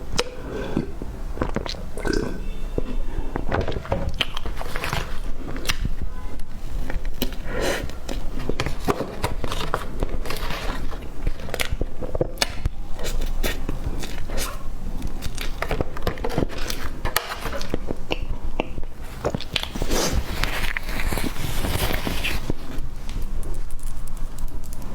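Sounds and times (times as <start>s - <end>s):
chewing and biting cake: 0.0s - 6.0s.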